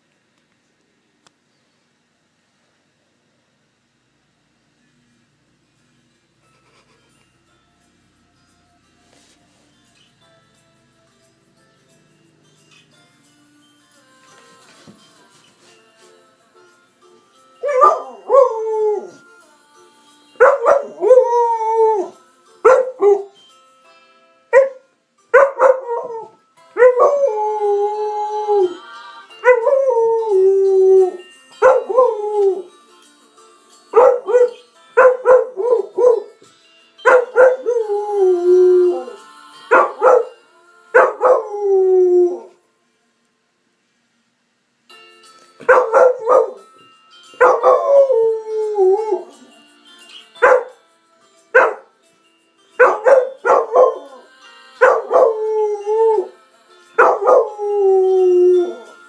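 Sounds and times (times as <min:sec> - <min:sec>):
dog howling and yelping: 0:17.6 - 0:19.2, 0:29.4 - 0:32.7, 0:41.0 - 0:42.5, 0:47.4 - 0:49.4, 0:52.8 - 0:56.4, 0:57.0 - 0:59.0.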